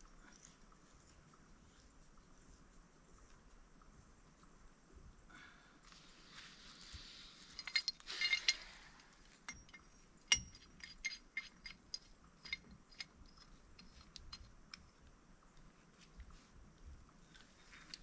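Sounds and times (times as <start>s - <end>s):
small metal parts clinking: 7.5s - 15.0s.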